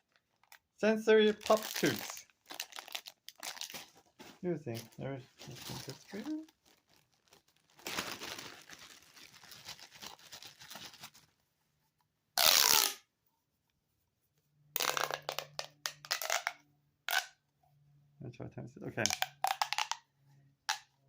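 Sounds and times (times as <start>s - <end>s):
plastic tubes crackling clicks: 1.4s - 3.9s, 14.8s - 17.3s, 19.0s - 20.0s, 20.7s - 20.9s.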